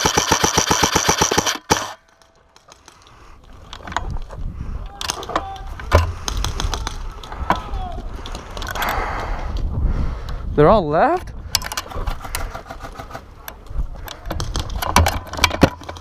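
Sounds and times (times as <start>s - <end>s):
airsoft gun full-auto burst: 0.0s - 2.0s.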